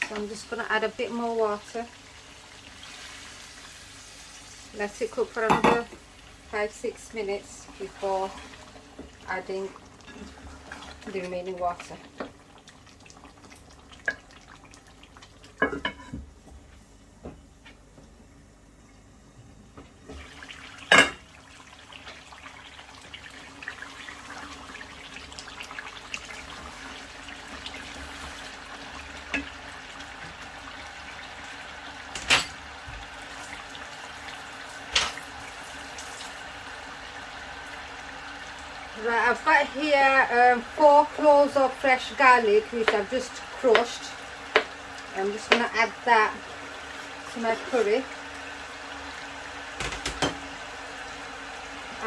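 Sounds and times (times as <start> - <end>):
pots and utensils knocking: 5.4 - 6.0, 49.8 - 50.5.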